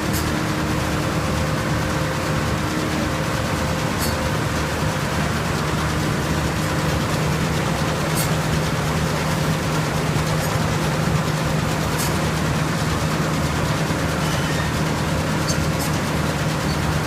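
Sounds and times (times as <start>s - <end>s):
combine harvester engine running: 0.0s - 17.0s.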